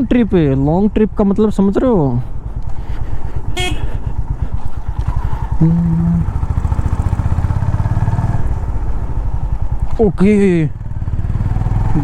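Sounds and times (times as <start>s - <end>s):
motorcycle engine running: 1.5s - 12.0s.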